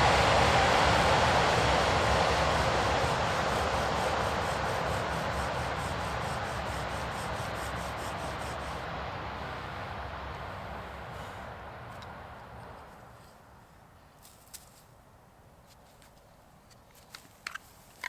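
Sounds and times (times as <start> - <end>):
bow drill spindle grinding wood: 0.0 - 8.8.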